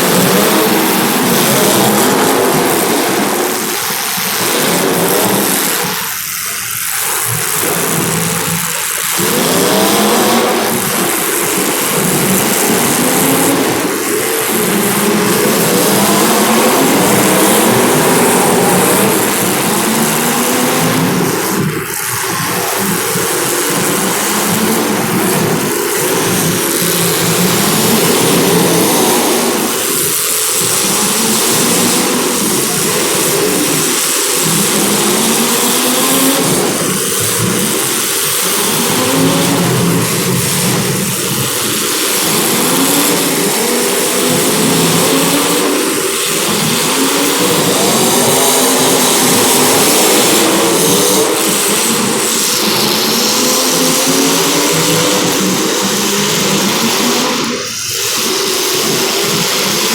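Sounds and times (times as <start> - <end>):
car engines running: 0.0 - 58.2.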